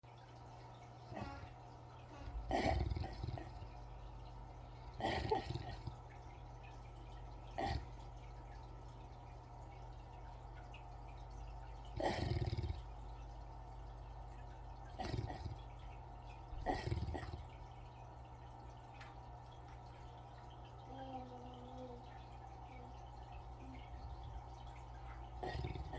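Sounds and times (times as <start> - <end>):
dog snoring: 1.1 - 6.2, 7.5 - 8.0, 11.9 - 13.0, 14.9 - 15.7, 16.6 - 17.7, 25.3 - 25.9.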